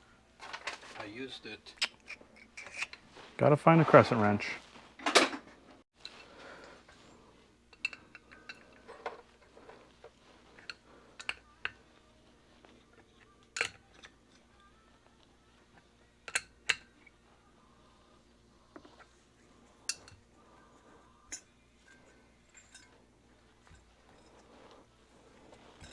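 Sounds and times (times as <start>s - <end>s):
metal hand tools clinking: 2.0s - 3.0s, 7.7s - 9.8s, 21.3s - 24.8s, 25.4s - 25.9s.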